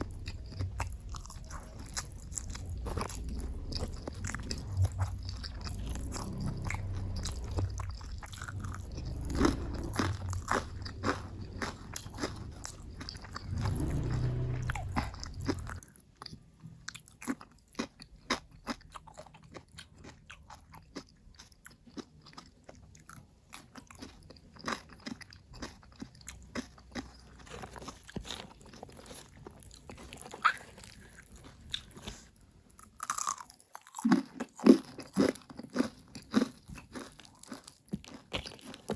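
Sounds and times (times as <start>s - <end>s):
low steady hum: 0.0s - 17.0s
person chewing crunchy food: 0.0s - 38.9s.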